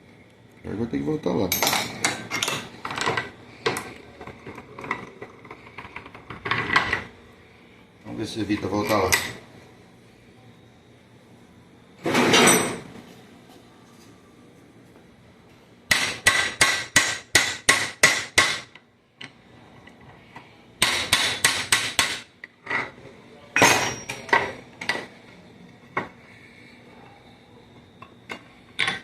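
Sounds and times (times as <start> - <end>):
hammer striking steel gear parts: 23.6 - 24.3.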